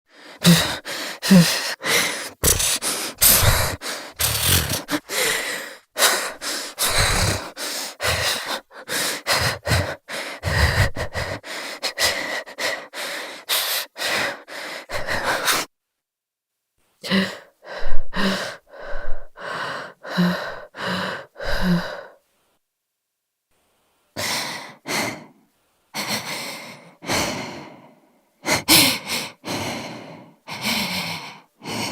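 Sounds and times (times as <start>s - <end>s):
woman's shaky breathing: 0.1s - 15.7s.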